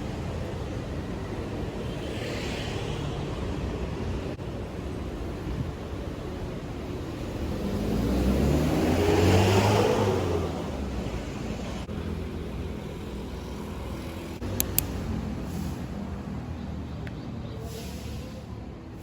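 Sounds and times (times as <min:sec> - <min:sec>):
street noise: 0:00.0 - 0:19.0
vehicle engine passing by: 0:07.1 - 0:12.2.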